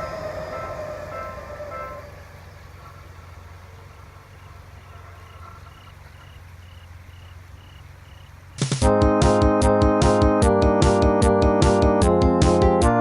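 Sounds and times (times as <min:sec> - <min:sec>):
piano music: 0:00.0 - 0:02.3, 0:08.6 - 0:13.0
steady low hum: 0:00.0 - 0:11.9.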